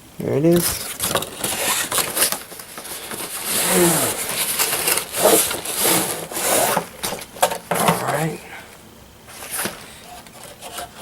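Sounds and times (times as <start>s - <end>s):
packaging crinkling and rustling: 0.6s - 8.4s.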